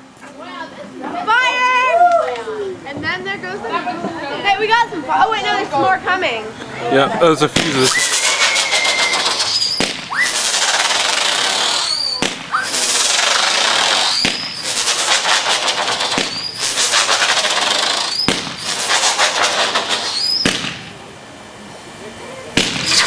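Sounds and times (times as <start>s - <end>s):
firework pops: 7.5s - 21.0s, 22.6s - 23.0s
hissing crackle: 7.6s - 21.0s, 22.6s - 23.0s
high rising whistle: 7.8s - 20.5s.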